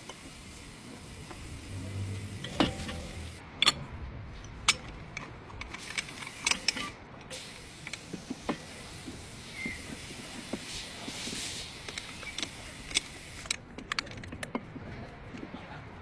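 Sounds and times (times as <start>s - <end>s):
tools clicking and knocking: 2.4s - 8.7s, 11.8s - 15.5s.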